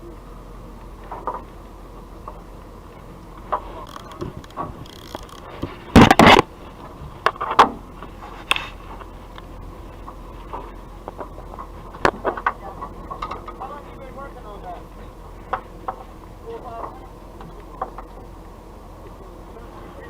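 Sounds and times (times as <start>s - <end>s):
steady hum: 0.0s - 20.0s
sharp clicks: 3.4s - 6.5s.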